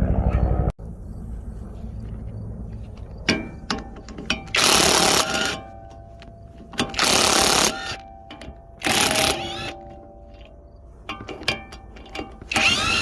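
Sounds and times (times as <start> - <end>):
sharp metal clicks: 3.0 - 13.0
metallic ringing: 3.1 - 13.0
power tool bursts: 4.5 - 5.8, 6.8 - 8.1, 8.8 - 9.9, 12.4 - 13.0.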